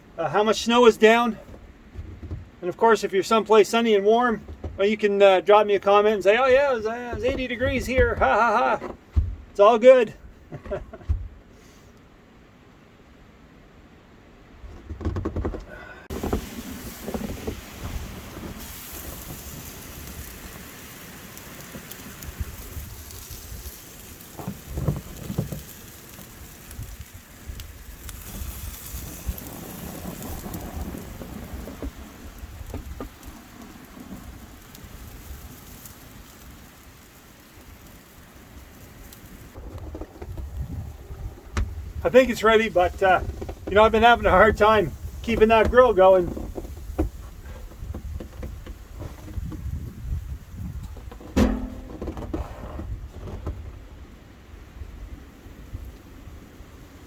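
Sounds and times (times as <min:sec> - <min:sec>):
wind buffeting microphone: 0:06.3 - 0:08.6, 0:26.5 - 0:35.6, 0:39.4 - 0:53.8
gusty blizzard wind: 0:15.7 - 0:25.3, 0:26.3 - 0:37.0, 0:37.6 - 0:51.3.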